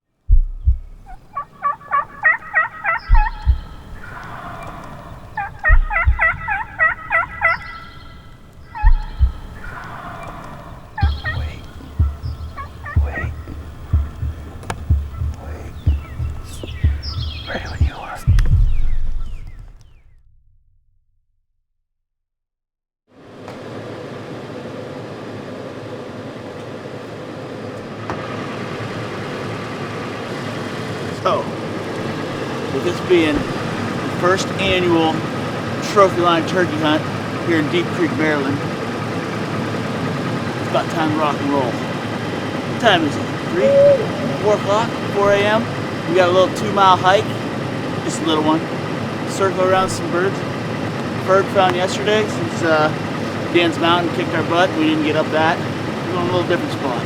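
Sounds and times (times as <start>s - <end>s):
dull low thumps: 0.2s - 20.8s, 31.9s - 35.7s
vehicle engine running: 0.3s - 20.0s, 23.2s - 57.0s
wild turkey gobbling: 0.6s - 20.0s, 28.7s - 57.0s
sharp click: 18.3s - 19.9s.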